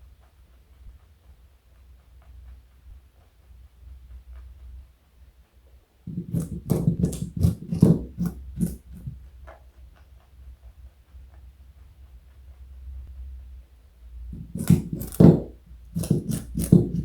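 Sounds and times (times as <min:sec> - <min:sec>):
rabbit crunching a carrot: 0:06.1 - 0:09.2, 0:14.3 - 0:17.0.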